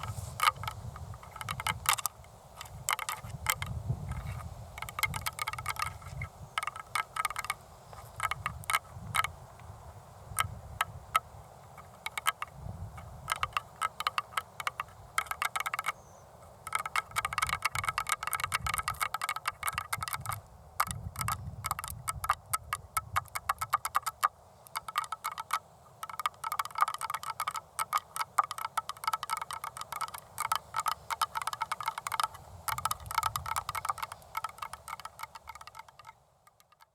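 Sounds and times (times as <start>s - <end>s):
fingernails tapping on hard surface: 16.7s - 36.8s.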